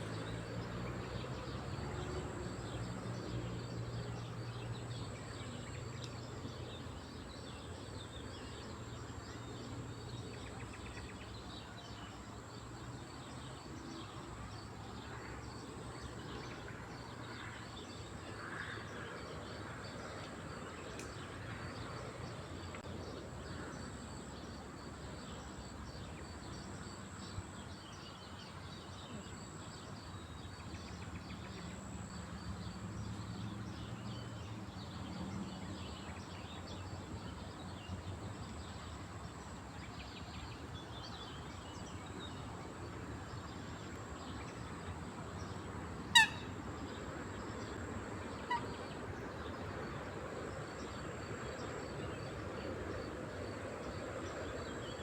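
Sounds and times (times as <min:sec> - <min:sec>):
coot call: 0:46.1 - 0:46.5.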